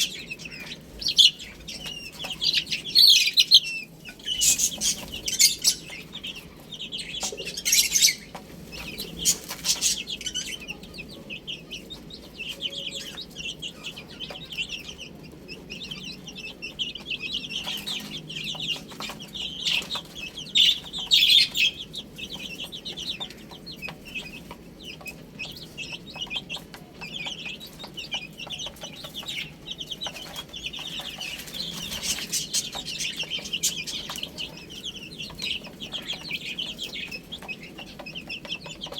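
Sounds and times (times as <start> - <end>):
chicks peeping: 0.0 - 38.9.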